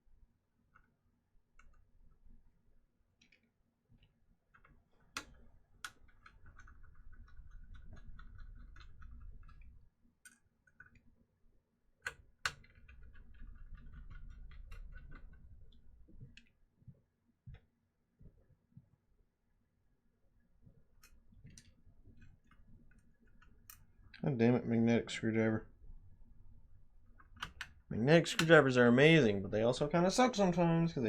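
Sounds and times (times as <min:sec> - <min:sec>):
screwdriver ticking and rubbing: 0:04.6 - 0:09.7.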